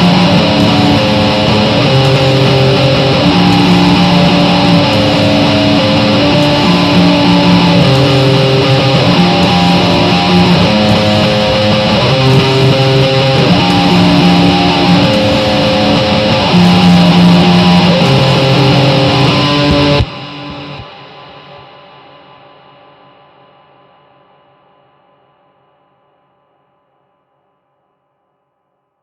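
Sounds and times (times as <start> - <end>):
loud guitar music: 0.0 - 22.7.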